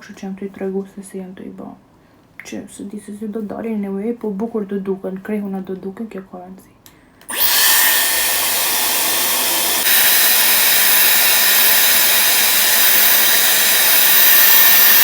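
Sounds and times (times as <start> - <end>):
hair styling tool blowing air: 7.3 - 15.0.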